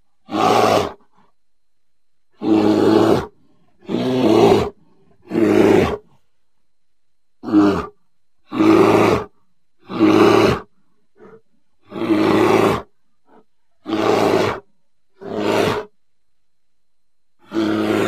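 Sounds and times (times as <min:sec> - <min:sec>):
bear roaring: 0:00.2 - 0:01.2, 0:02.4 - 0:06.2, 0:07.4 - 0:16.0, 0:17.4 - 0:18.0.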